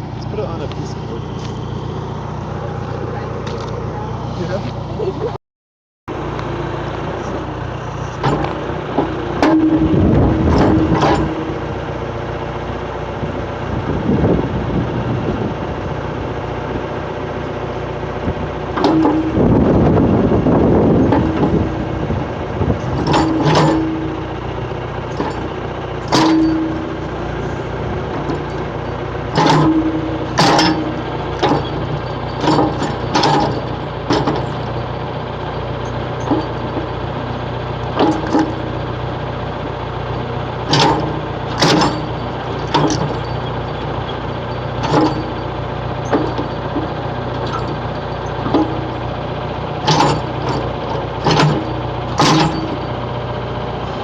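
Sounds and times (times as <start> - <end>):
backhoe diesel engine running: 0.0 - 5.4, 6.1 - 54.0
metal clunks and knocks: 7.2 - 11.9, 18.3 - 39.9, 40.5 - 54.0.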